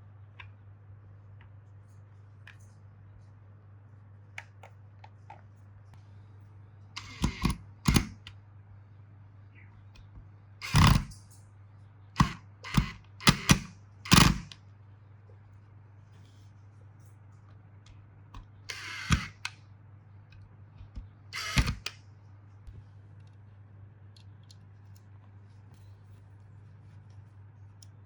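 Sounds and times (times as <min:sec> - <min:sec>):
steady low hum: 0:00.0 - 0:28.0.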